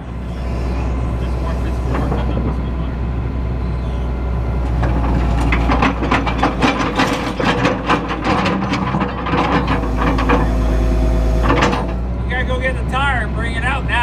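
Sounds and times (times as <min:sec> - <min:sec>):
diesel engine running: 0:00.0 - 0:14.0
clattering knocks and clanks: 0:01.7 - 0:02.9, 0:04.6 - 0:10.6, 0:11.4 - 0:12.0.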